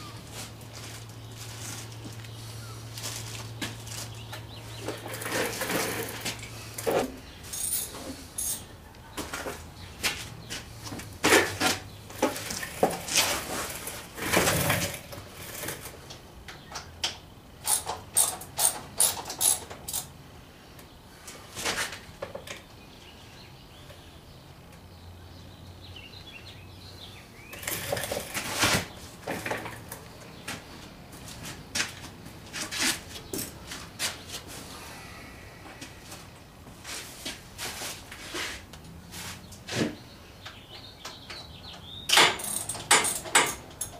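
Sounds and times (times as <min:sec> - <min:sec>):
metal hand tools clinking: 0:07.5 - 0:08.7, 0:42.1 - 0:43.9.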